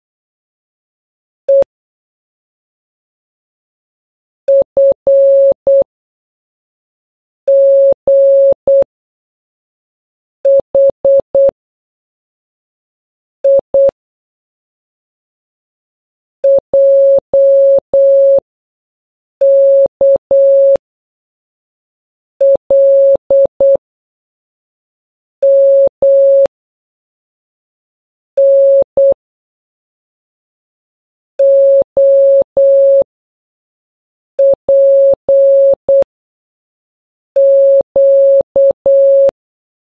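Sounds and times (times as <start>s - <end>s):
morse code beeps: 10.5s - 11.5s, 13.5s - 13.9s, 16.4s - 18.4s, 19.4s - 20.8s, 22.4s - 23.8s, 25.4s - 26.5s, 28.4s - 29.2s, 31.4s - 33.0s, 34.4s - 36.1s, 37.4s - 39.3s.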